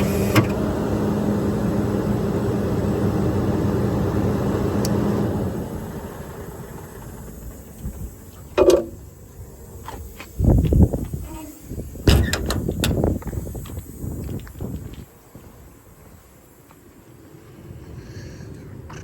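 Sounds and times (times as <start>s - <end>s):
truck machinery humming: 0.0s - 14.5s
sharp clunk: 8.6s - 9.0s, 12.1s - 13.1s.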